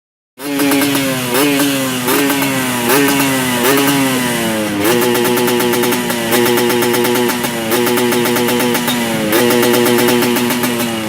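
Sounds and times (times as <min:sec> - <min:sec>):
two-stroke motorcycle engine revving: 0:00.4 - 0:11.0.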